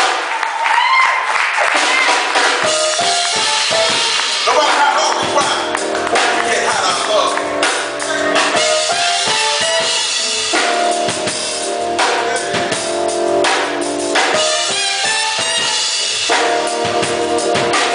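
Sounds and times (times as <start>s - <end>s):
drum kit beat: 0.0s - 0.4s, 1.5s - 17.9s
sustained pitched instrument notes: 2.6s - 16.1s.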